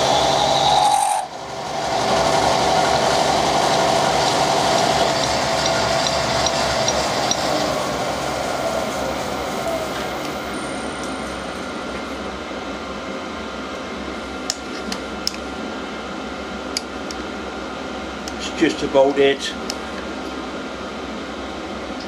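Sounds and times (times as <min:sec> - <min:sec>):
machine tool winding down: 0:00.0 - 0:08.2.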